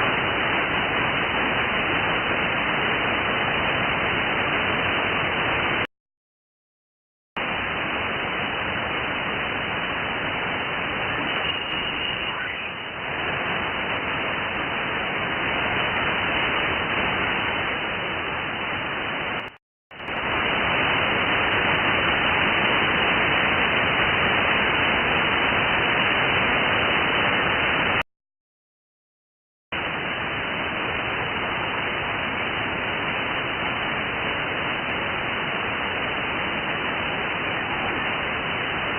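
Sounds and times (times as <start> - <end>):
radio static hiss: 0.0 - 5.9, 7.4 - 28.0.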